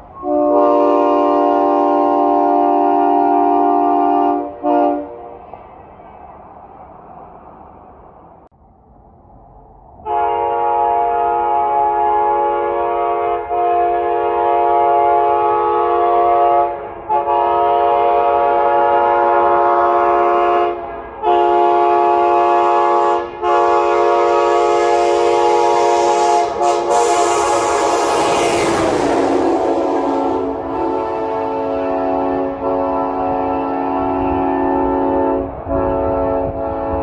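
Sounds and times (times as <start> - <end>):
train horn blasts: 0.0 - 5.4, 10.0 - 37.0
rush of approaching train: 0.0 - 37.0.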